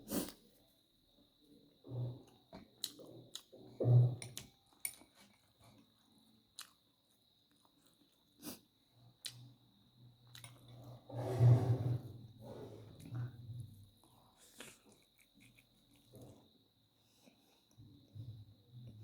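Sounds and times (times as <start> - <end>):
chewing with mouth clicks: 2.6 - 3.6, 4.3 - 8.4, 14.0 - 16.5.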